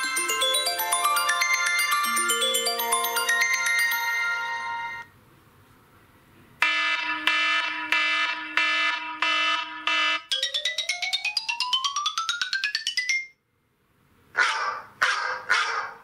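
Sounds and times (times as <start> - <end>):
alarm-like beeping ringtone: 0.0 - 5.1
chiming ringtone melody: 0.0 - 5.1, 10.3 - 13.4.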